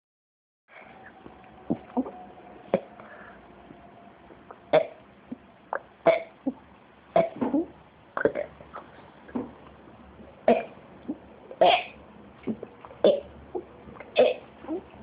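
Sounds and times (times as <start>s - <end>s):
little girl burping: 14.1s - 14.4s.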